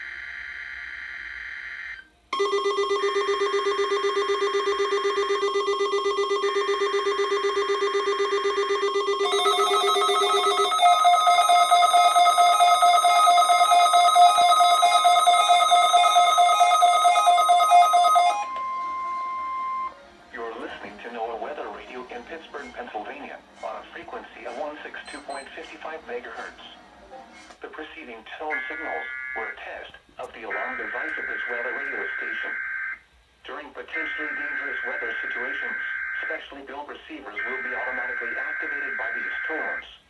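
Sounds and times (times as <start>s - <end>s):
rapid pulsing electronic alarm: 0.0s - 20.0s, 24.5s - 25.7s
digital alert data bursts: 2.4s - 18.4s
steady warning tone: 2.4s - 25.9s.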